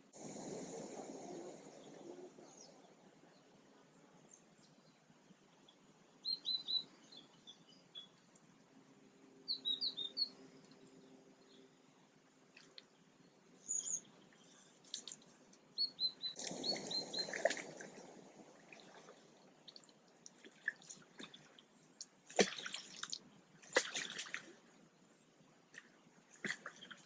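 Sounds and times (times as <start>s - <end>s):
rush of noise: 0.1s - 2.9s
songbird chirping: 0.2s - 27.0s.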